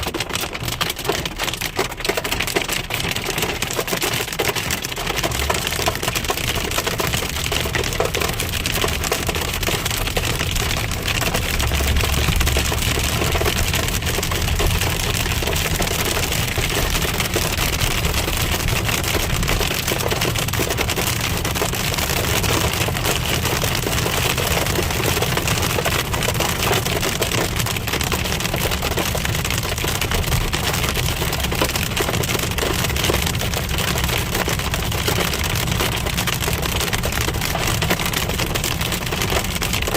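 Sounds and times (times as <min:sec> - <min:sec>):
hail pelting a car: 0:00.0 - 0:39.9.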